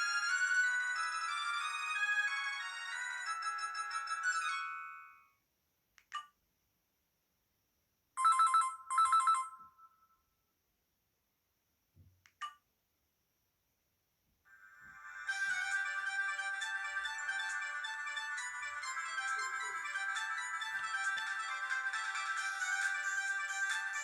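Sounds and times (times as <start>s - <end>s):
polyphonic ringtone melody: 0.0s - 5.3s, 8.2s - 9.8s, 14.5s - 24.0s
trilling phone ringtone: 0.0s - 5.3s, 8.2s - 10.2s, 14.5s - 24.0s.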